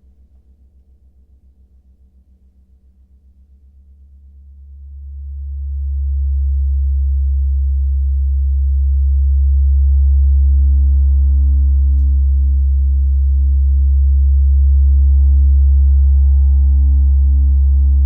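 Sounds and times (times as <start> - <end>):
deep gong hum: 8.3 - 18.0.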